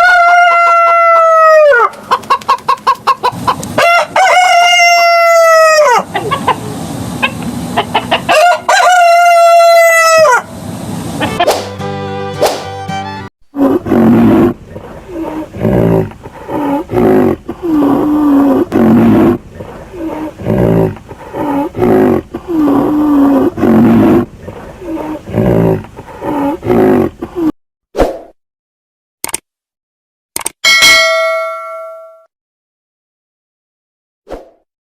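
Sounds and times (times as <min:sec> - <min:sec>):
animal roaring calls: 0:13.5 - 0:27.5.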